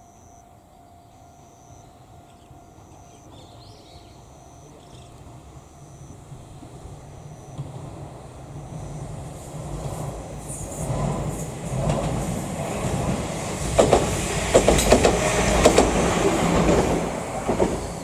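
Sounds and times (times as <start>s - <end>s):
train rumbling past: 0.0s - 18.0s
train wheels clicking over rail joints: 4.9s - 18.0s.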